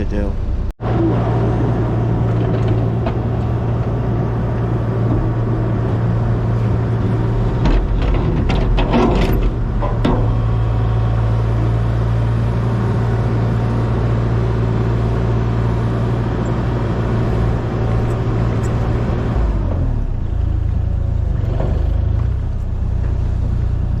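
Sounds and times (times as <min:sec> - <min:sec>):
low engine drone: 0:00.0 - 0:24.0
sharp clicks and knocks: 0:07.4 - 0:10.5.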